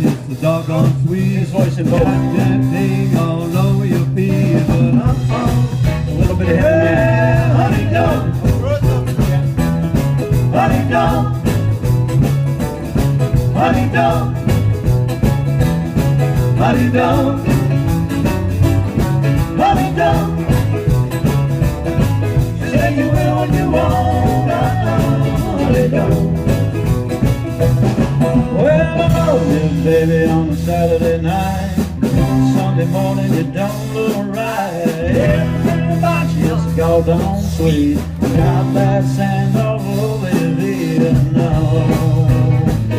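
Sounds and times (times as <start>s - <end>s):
bass line: 0.0s - 42.9s
live rock and roll band: 0.0s - 42.9s.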